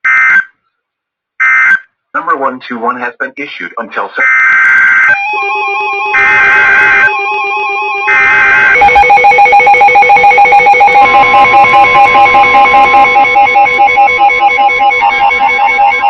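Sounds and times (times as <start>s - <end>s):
screeching two-tone digital header: 4.2s - 16.0s
pulsing electronic alert tone: 5.2s - 16.0s
warbling tones: 5.2s - 16.0s.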